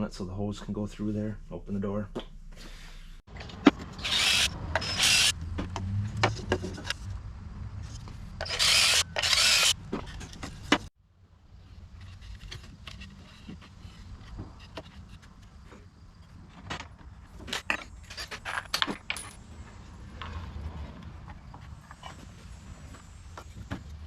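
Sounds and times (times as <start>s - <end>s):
power tool bursts: 4.0s - 5.3s, 8.4s - 9.8s.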